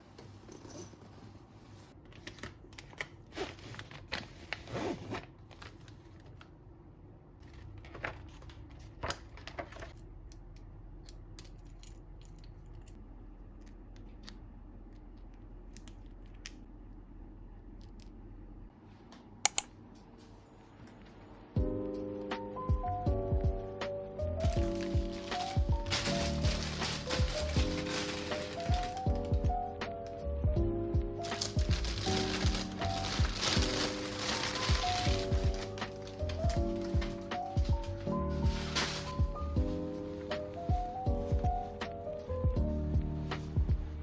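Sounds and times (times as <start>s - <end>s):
packaging rustling and crinkling: 0.0s - 6.5s, 7.4s - 10.0s, 24.5s - 29.3s, 31.2s - 42.0s.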